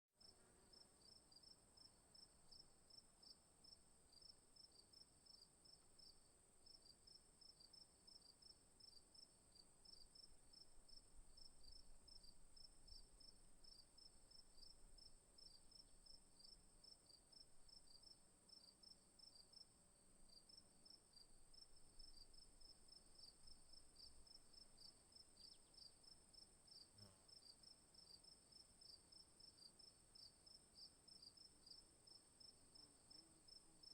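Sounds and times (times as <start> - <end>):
crickets chirping: 0.2 - 19.7, 20.3 - 33.9.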